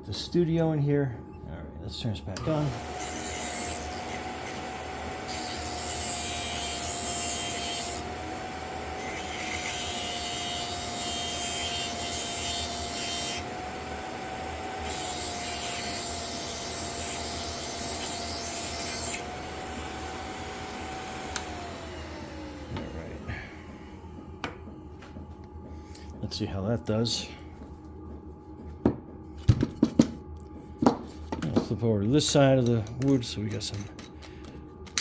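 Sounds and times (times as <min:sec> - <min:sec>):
motor whine: 0:02.4 - 0:25.7.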